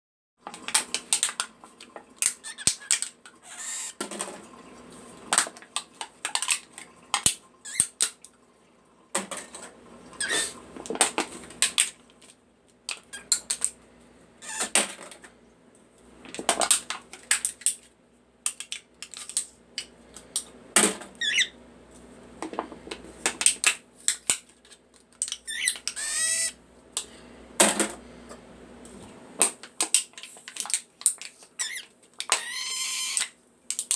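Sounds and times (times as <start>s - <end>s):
cockatiel squeaky chirps: 2.4s - 4.0s, 7.6s - 7.9s, 10.2s - 10.6s, 14.4s - 14.7s, 21.2s - 21.6s, 25.4s - 26.6s, 31.6s - 33.3s
cockatiel wavering call: 2.4s - 4.0s, 21.2s - 21.6s, 25.5s - 26.6s, 31.6s - 31.8s, 32.4s - 33.3s.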